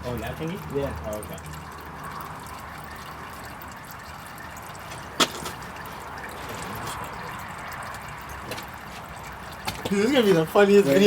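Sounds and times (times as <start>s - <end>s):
oil trickling while poured: 0.0s - 11.0s.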